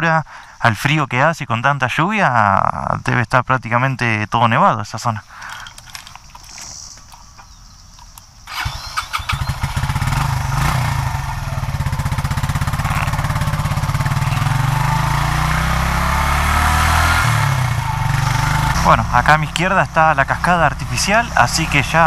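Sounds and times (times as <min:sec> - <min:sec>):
motorcycle engine running: 0:08.5 - 0:22.0.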